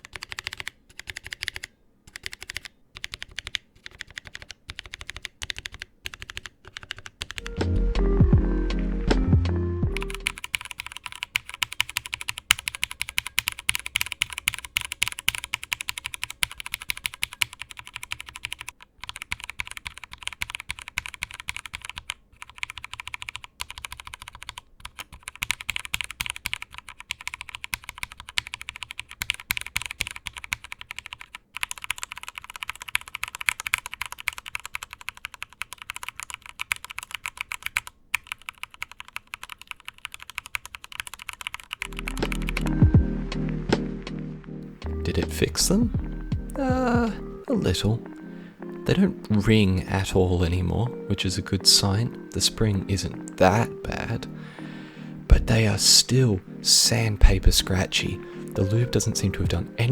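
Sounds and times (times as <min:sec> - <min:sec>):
fast typing on mechanical keyboard: 0:00.0 - 0:07.5, 0:10.0 - 0:42.6.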